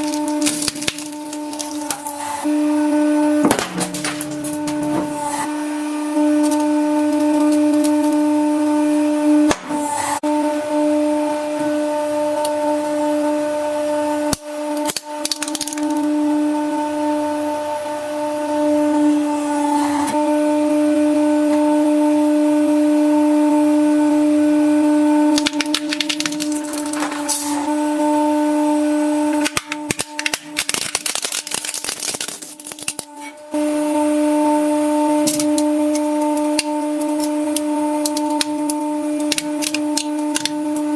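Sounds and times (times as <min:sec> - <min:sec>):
hydraulic press humming: 0:00.0 - 0:20.4, 0:32.4 - 0:40.9.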